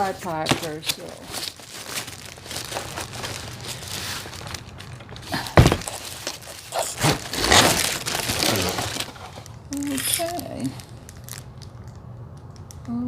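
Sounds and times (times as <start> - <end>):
plastic wrapping crinkling: 0.0 - 12.8
cardboard box being opened: 0.5 - 9.5.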